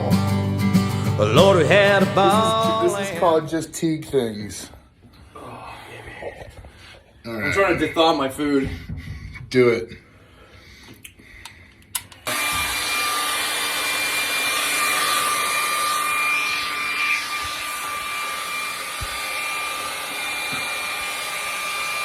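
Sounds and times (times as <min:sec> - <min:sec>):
hair dryer running: 0:12.0 - 0:22.0.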